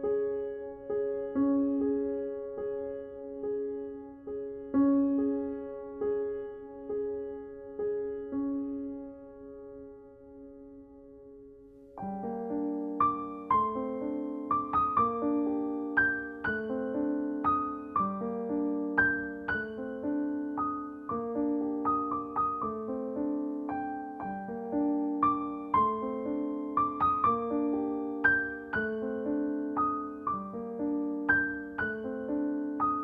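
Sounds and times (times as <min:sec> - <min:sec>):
soft piano music: 0:00.0 - 0:33.0.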